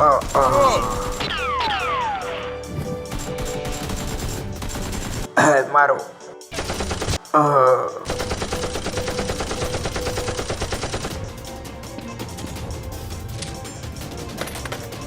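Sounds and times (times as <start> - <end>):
automatic gunfire: 0.0 - 2.4, 3.1 - 5.3, 6.5 - 7.2, 8.1 - 11.3.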